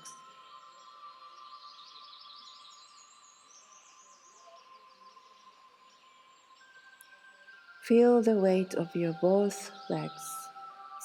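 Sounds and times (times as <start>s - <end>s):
bird chirping: 8.1s - 10.7s.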